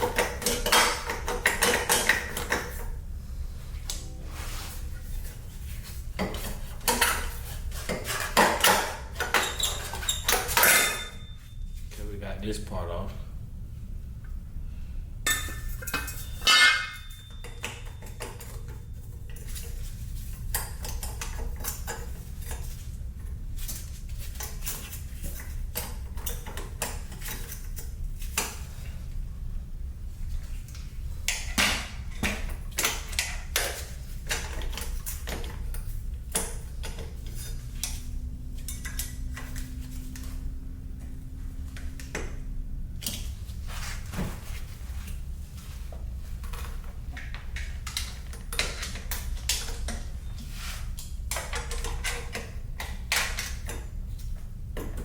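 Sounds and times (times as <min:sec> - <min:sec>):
steady low hum: 0:00.0 - 0:55.0
metal tools clinking: 0:08.1 - 0:11.5, 0:15.3 - 0:18.7.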